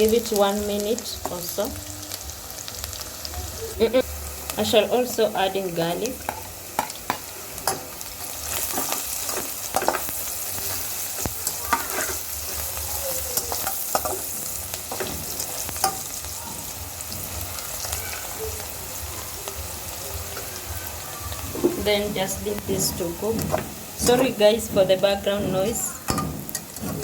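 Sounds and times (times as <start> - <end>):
food sizzling in hot oil: 0.0 - 27.0
spoon scraping a pot: 7.6 - 12.8, 22.5 - 27.0.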